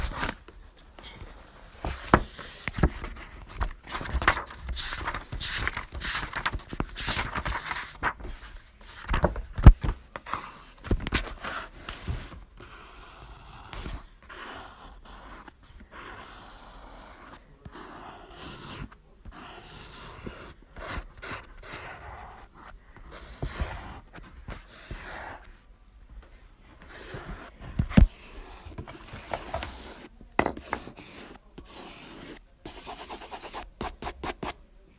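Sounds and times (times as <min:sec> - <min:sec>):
pen scratching on paper: 0:04.0 - 0:07.9, 0:10.3 - 0:25.6, 0:26.8 - 0:34.6.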